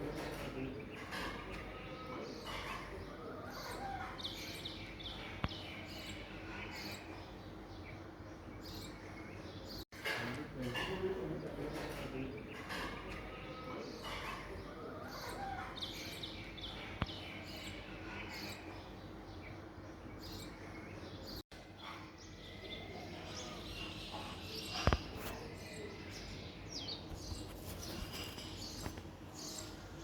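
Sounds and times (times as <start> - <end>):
birds chirping: 0.0 - 30.0
low outdoor background: 0.0 - 30.0.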